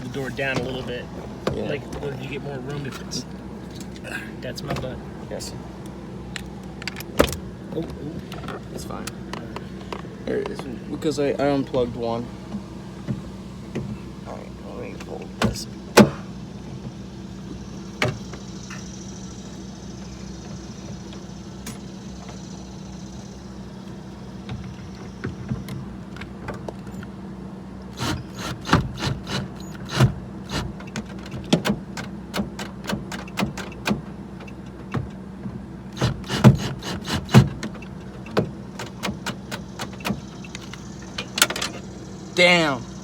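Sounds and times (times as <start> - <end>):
steady low hum: 0.0 - 32.6.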